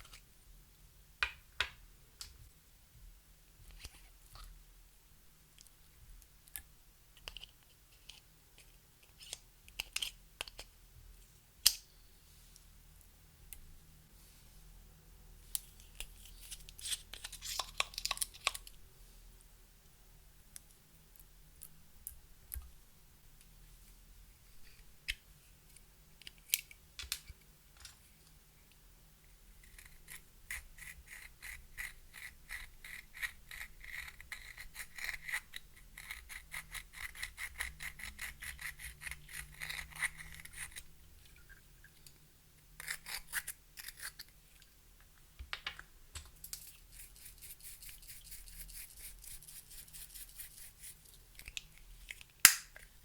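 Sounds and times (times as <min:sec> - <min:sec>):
makeup clicking and scraping: 0:06.5 - 0:10.7, 0:15.6 - 0:18.8, 0:29.8 - 0:41.4, 0:45.6 - 0:52.9.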